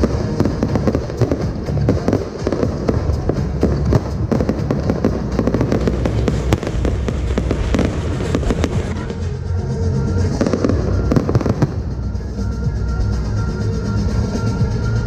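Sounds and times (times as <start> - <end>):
fireworks cracks and bangs: 0.0 - 9.3, 10.1 - 12.0
low rumble: 0.0 - 15.0.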